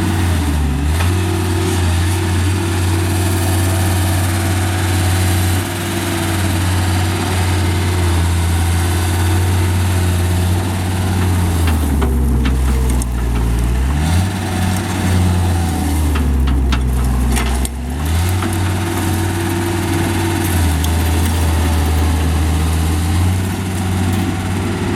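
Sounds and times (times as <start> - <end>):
diesel engine running: 0.0 - 24.9
metal clanking: 11.2 - 21.6.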